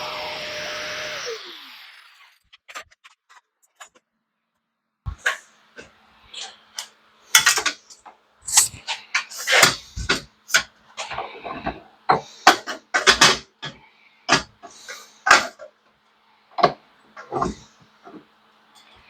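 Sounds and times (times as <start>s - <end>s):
metal tools clanking: 6.3s - 15.7s, 16.6s - 19.0s.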